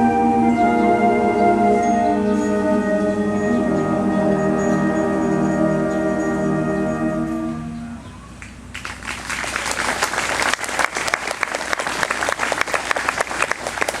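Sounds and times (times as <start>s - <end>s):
wind band held chord: 0.0s - 8.8s
audience applause: 8.4s - 14.0s.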